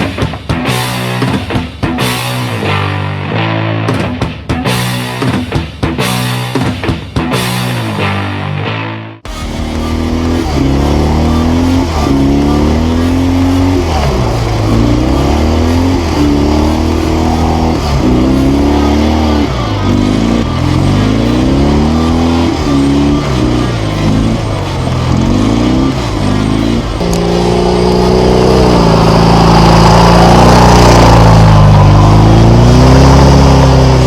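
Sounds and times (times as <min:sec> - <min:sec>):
motorcycle engine revving: 0:09.3 - 0:34.0.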